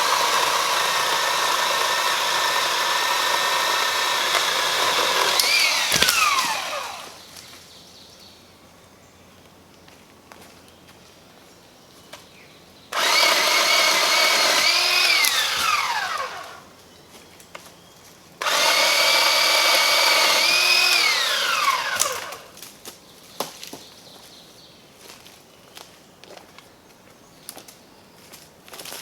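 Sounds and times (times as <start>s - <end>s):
electric pole saw whining: 0.0s - 7.5s, 12.9s - 16.7s, 18.4s - 22.6s.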